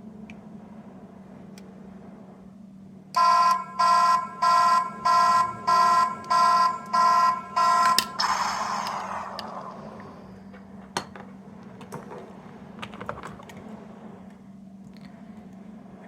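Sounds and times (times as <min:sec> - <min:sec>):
electronic alarm beeps: 0:03.2 - 0:09.3
toy click: 0:07.8 - 0:09.6.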